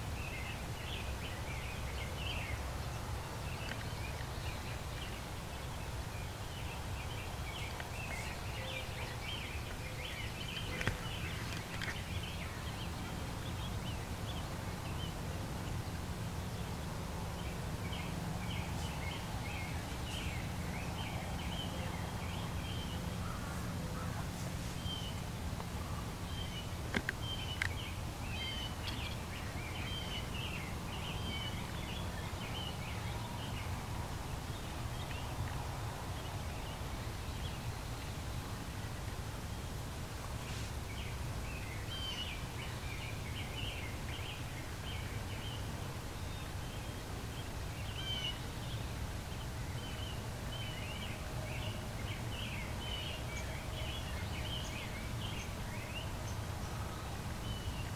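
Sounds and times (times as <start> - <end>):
songbirds chirping and singing: 0.0 - 39.8, 40.4 - 57.9.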